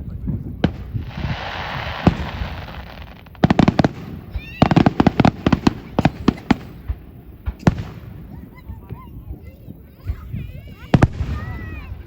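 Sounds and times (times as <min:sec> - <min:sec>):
fireworks crackling hiss: 0:00.0 - 0:08.6
fireworks cracks and pops: 0:00.6 - 0:06.8
warbling firework whistle: 0:01.0 - 0:04.9.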